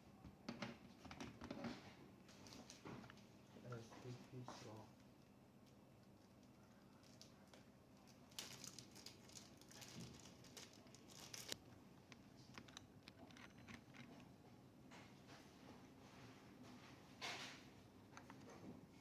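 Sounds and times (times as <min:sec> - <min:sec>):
packaging crinkling and rustling: 0:02.3 - 0:03.3, 0:06.2 - 0:11.6.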